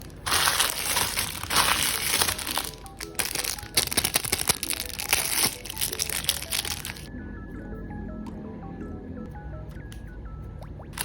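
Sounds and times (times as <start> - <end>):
plastic packaging crinkling: 0.0 - 7.1
background music: 0.0 - 11.0.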